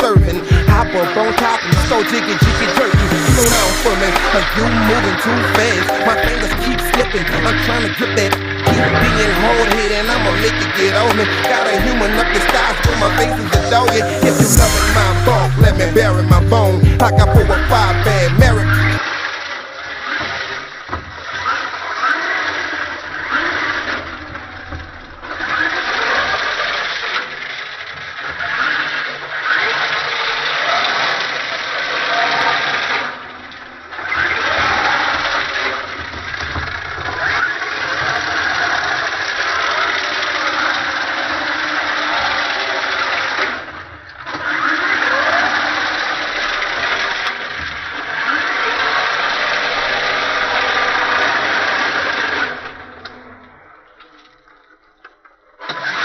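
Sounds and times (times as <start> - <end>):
tyre scrubbing noise: 0.0 - 19.0
rc car motor revving: 21.4 - 36.0, 37.1 - 53.0.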